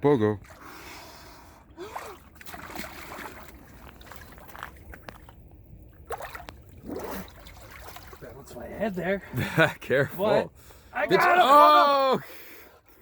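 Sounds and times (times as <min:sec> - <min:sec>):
water sloshing and trickling: 0:00.0 - 0:10.9
small splashes: 0:01.8 - 0:08.4.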